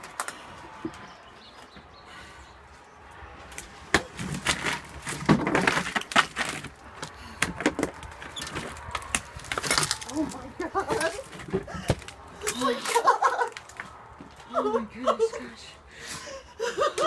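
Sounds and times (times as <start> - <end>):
wood debris crunching and snapping: 3.5 - 14.4.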